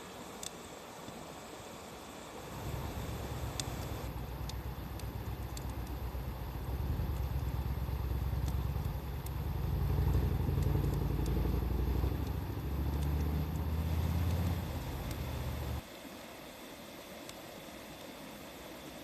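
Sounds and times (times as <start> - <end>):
wood fire crackling: 2.4 - 15.8
vehicle engine rumbling: 2.5 - 15.8.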